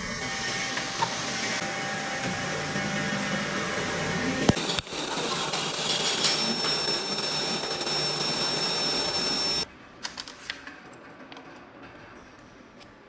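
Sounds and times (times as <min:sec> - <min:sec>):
welding equipment hissing and whining: 0:00.0 - 0:09.7.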